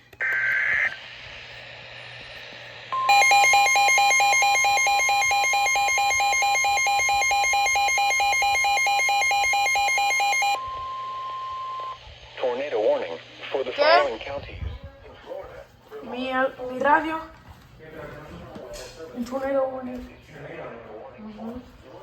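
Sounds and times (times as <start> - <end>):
steady warning alarm tone: 2.9 - 12.0
two-pitch electronic beeping: 3.0 - 12.0.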